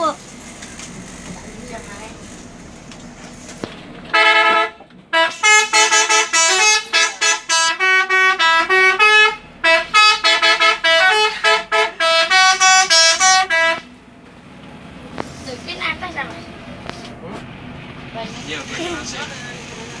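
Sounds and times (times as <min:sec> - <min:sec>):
multi-tone bus horn melody: 0:04.1 - 0:14.0.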